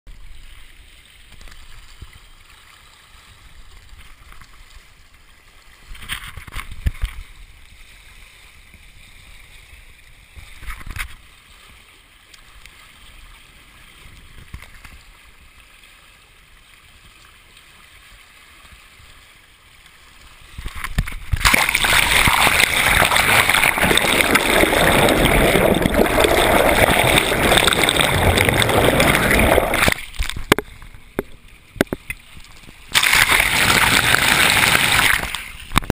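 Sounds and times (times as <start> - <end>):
water rushing splash: 20.6 - 35.9.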